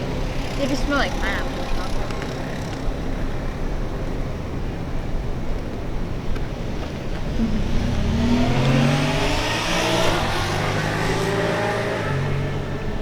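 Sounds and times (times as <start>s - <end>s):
vehicle engine passing by: 7.0s - 13.0s.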